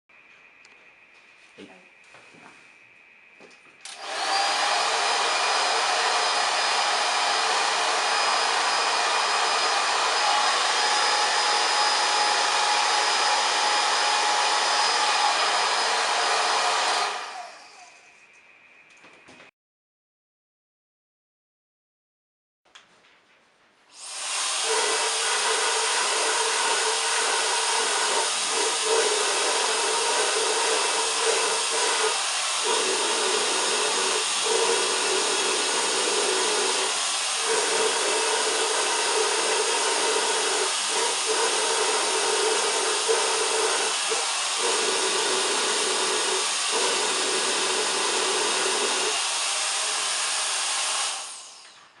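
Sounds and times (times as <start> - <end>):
hair dryer switch: 3.8 - 10.8
hair dryer blowing: 3.9 - 18.0, 24.0 - 51.9.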